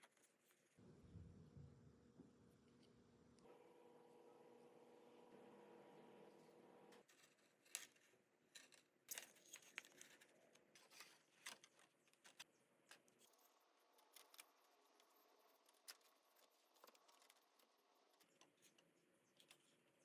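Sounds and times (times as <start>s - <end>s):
small hard parts clicking and tapping: 7.0s - 20.0s.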